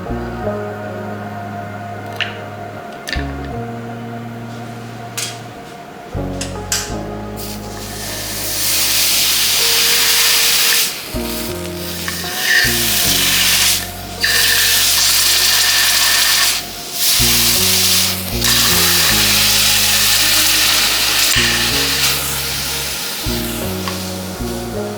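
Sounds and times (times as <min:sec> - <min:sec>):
background music: 0:00.0 - 0:24.9
hot metal sizzling on ice: 0:07.4 - 0:24.9.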